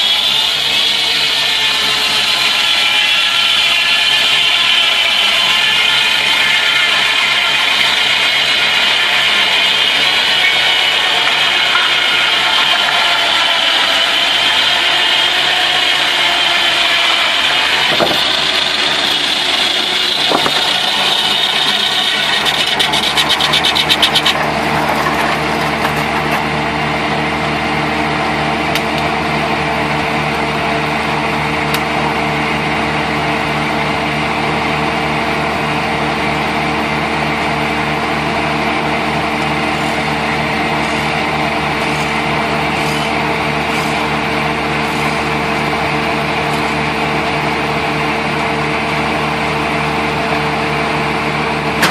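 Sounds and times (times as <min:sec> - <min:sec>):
sawmill machine whine: 0:00.0 - 0:51.9
steady motor hum: 0:00.0 - 0:51.9
rapid machine clatter: 0:01.3 - 0:26.6.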